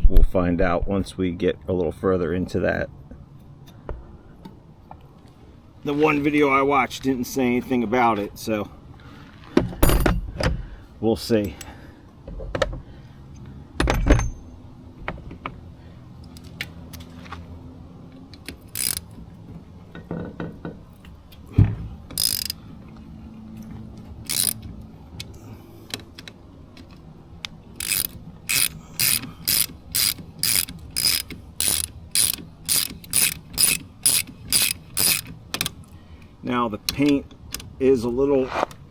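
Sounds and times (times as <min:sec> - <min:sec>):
ratchet wrench clicking: 0:18.4 - 0:19.3, 0:22.1 - 0:22.6, 0:24.2 - 0:24.7, 0:27.8 - 0:35.8.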